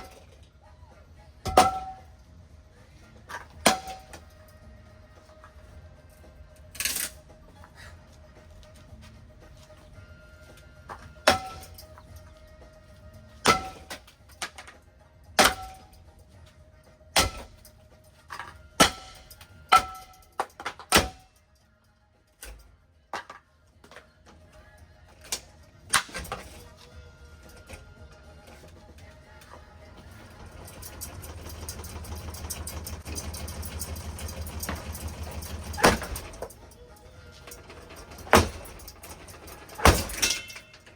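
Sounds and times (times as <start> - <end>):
sharp metallic impacts ringing: 1.4 - 2.2, 3.5 - 4.4, 11.0 - 12.0, 13.4 - 14.1, 15.4 - 16.1, 17.2 - 17.7, 18.7 - 21.4, 30.4 - 40.9
fast rattling clicks: 30.4 - 36.6.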